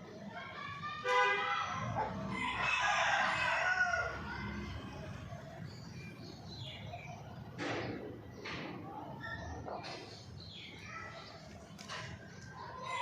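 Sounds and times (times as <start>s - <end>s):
rooster crowing: 2.3s - 4.3s.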